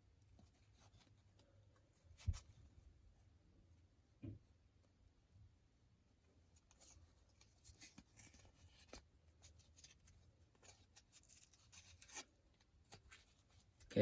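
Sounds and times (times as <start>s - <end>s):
wrapper crinkling and cards rustling: 6.7s - 14.0s.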